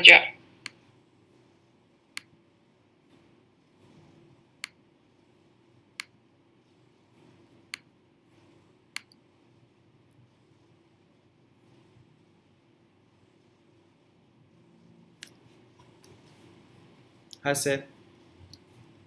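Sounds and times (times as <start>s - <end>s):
faint steady hum: 0.0s - 19.0s
computer mouse clicks: 8.9s - 9.2s.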